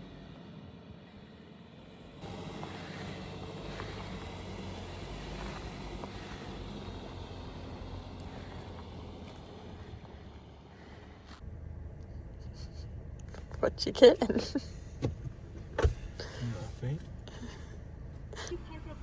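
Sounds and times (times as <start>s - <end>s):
car engine hum and road noise: 0.0s - 19.0s.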